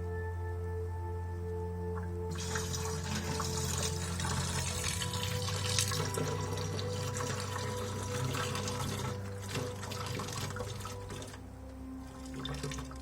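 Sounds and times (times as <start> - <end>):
background music: 0.0 - 13.0
liquid splashing and pouring: 2.3 - 11.4, 12.0 - 13.0.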